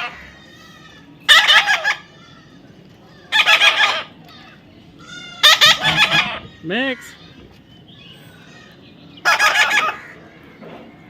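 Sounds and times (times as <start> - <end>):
parrot squawking: 1.3 - 2.6, 3.3 - 4.1, 5.0 - 7.3, 8.2 - 10.2.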